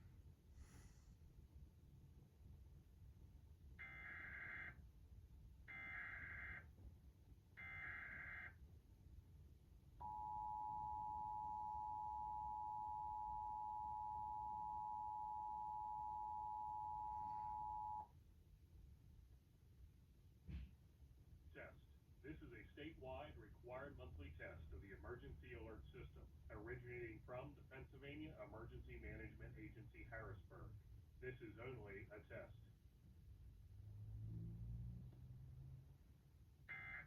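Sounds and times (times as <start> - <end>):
two-tone attention signal: 10.0 - 18.0.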